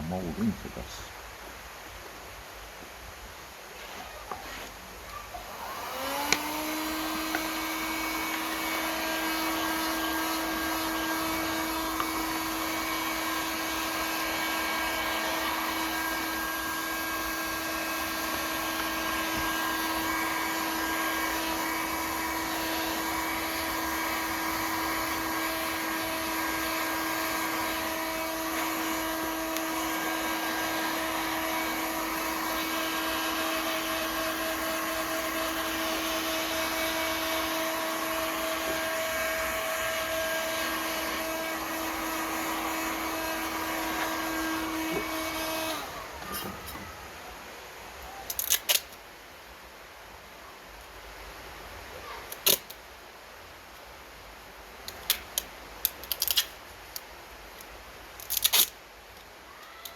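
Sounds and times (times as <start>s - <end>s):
electric blower motor whining: 5.5s - 46.9s.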